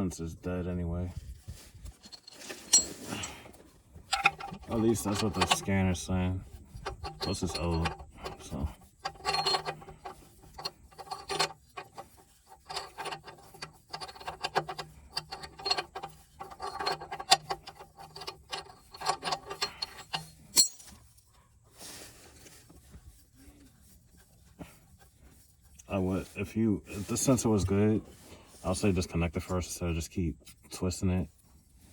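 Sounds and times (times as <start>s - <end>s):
ratchet clicking: 12.6s - 20.8s.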